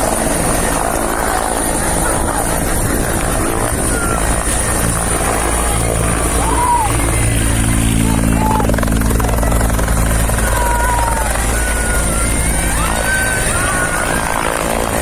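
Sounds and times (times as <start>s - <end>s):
helicopter rotor beat and whine: 0.0s - 15.0s.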